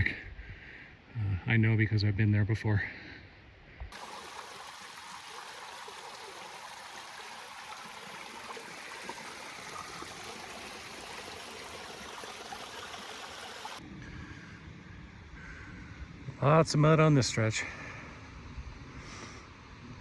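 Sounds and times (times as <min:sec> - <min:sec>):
creek water rushing: 0:03.9 - 0:13.8.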